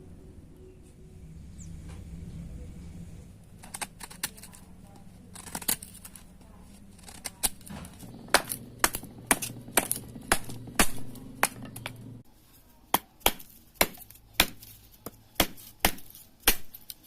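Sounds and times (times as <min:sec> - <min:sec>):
low steady hum: 0:00.0 - 0:12.8
knife chopping strikes: 0:06.9 - 0:12.2, 0:12.9 - 0:17.0.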